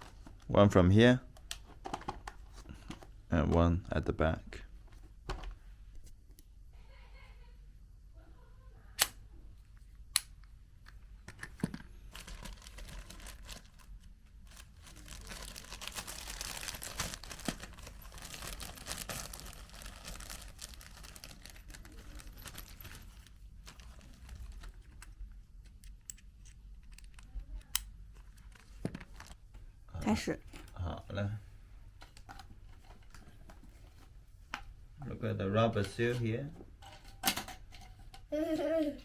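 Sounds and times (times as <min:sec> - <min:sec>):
plastic scraping and rustling: 0:01.5 - 0:03.1, 0:11.5 - 0:25.2, 0:28.2 - 0:29.5.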